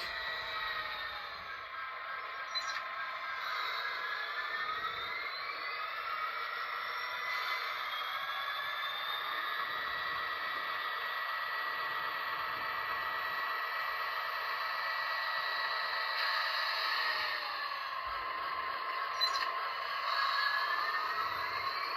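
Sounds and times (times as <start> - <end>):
faint rising whine: 0.0 - 21.9
model train running on track: 0.0 - 21.9.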